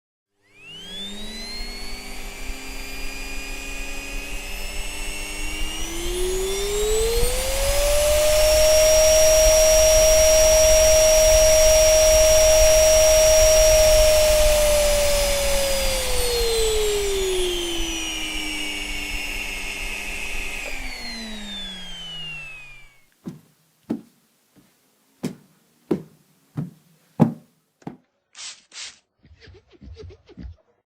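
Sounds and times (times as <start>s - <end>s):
vacuum cleaner motor whining: 0.4s - 23.4s.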